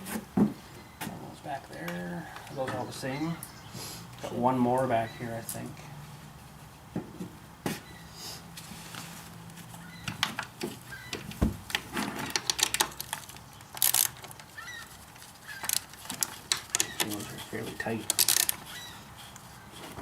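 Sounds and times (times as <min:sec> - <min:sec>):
tools and bike parts rattling: 0:10.0 - 0:20.0.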